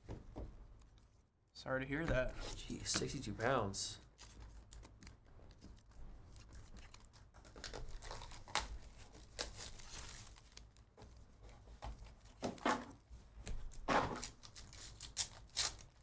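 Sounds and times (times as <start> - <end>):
cards rustling: 2.1 - 11.2
foil wrappers tearing and crinkling: 6.6 - 10.8, 13.7 - 16.0.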